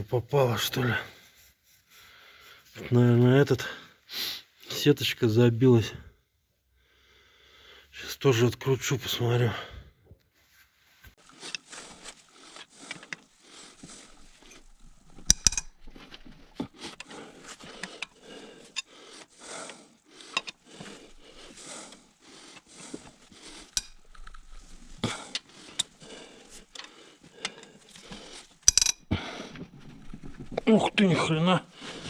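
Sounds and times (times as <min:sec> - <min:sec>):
ratchet wrench clicking: 0:23.7 - 0:24.0, 0:28.7 - 0:29.0.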